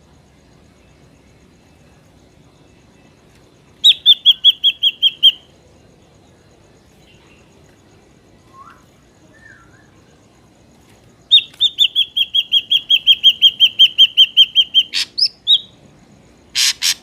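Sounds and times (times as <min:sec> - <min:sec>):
faint gliding bird notes: 0:01.3 - 0:10.4
bird whistled notes: 0:03.8 - 0:05.5, 0:08.5 - 0:10.0, 0:11.3 - 0:15.7.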